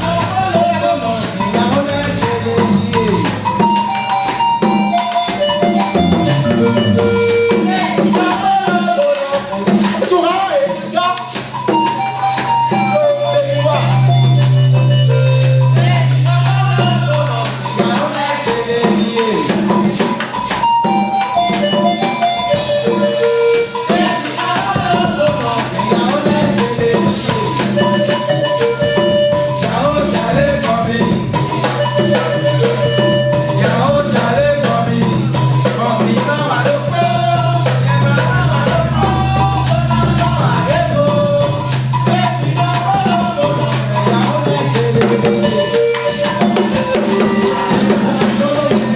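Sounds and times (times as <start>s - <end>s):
drums and percussion: 0.0s - 48.9s
low bass line: 5.7s - 7.8s, 13.5s - 17.2s, 37.2s - 41.9s
person singing: 21.4s - 48.9s.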